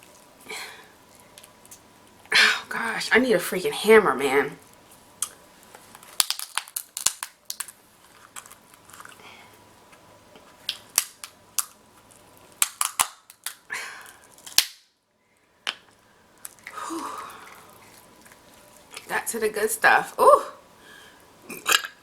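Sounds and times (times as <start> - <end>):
crab shell cracking: 5.2 - 9.2, 10.6 - 14.9, 15.7 - 19.1
shell crunching: 5.2 - 9.2.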